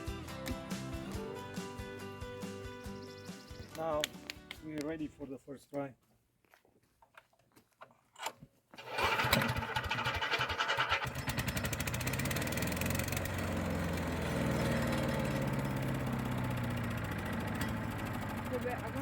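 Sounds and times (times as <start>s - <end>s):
small gasoline engine running: 8.8s - 19.0s.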